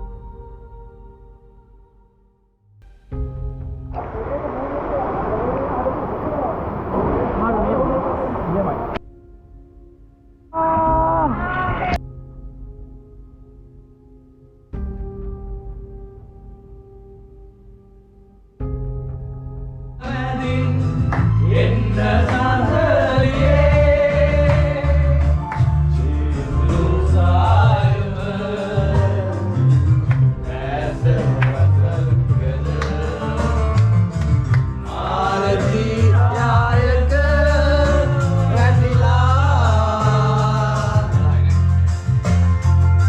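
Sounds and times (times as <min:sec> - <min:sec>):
song with singing over bass line: 0:20.0 - 0:42.9.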